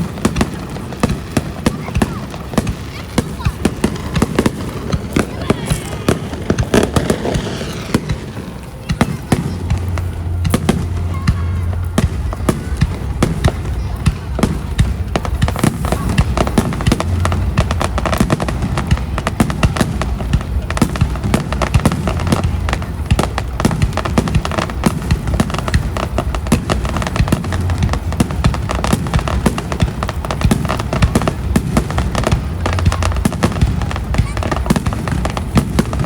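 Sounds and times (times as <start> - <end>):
fireworks bangs and crackles: 0.0 - 36.0
deep rumble: 6.0 - 24.0.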